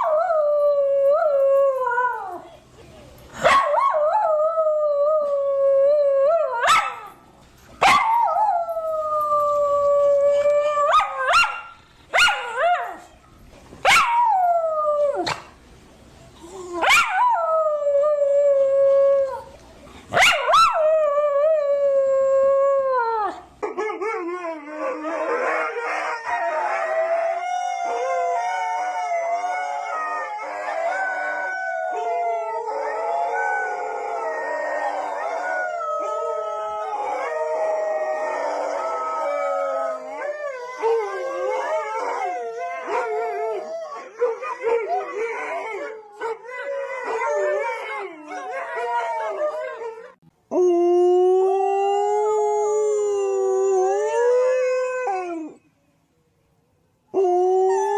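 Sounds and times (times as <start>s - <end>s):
overlapping howls: 24.0s - 50.2s
dog howling: 24.2s - 55.6s.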